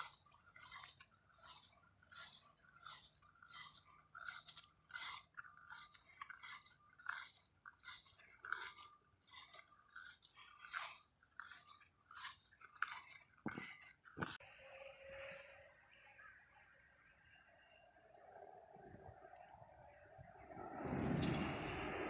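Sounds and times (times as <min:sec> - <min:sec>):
footsteps crunching on gravel: 0:00.0 - 0:14.4.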